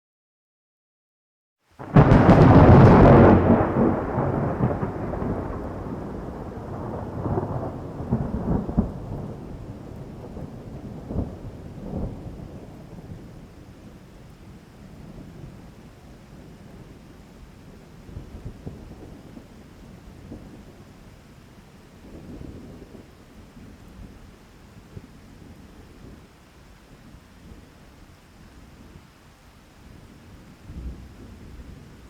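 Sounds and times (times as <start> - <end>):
thunder crack: 1.8 - 10.4
rolling thunder rumbling: 1.8 - 21.2.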